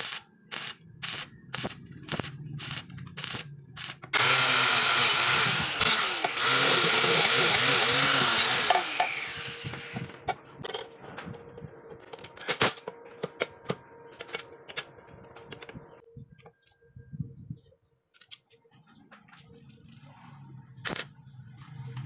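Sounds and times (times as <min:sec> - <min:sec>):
power tool motor winding down: 0:01.0 - 0:10.3.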